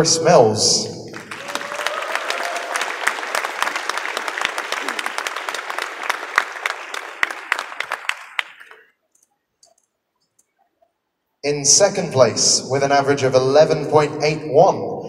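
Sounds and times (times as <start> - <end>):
audience applauding: 1.1 - 9.0.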